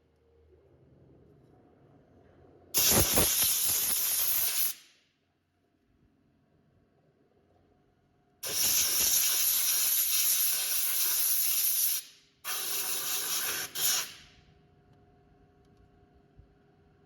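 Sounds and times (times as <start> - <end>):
compressed air blow gun hissing: 2.8 - 4.8, 8.4 - 14.2.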